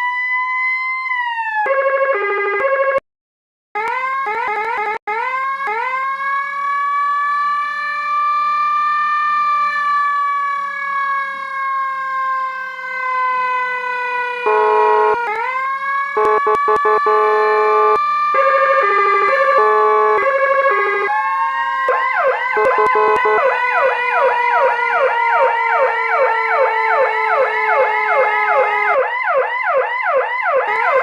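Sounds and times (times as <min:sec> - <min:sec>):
electronic siren: 0:00.0 - 0:03.0, 0:03.8 - 0:31.0.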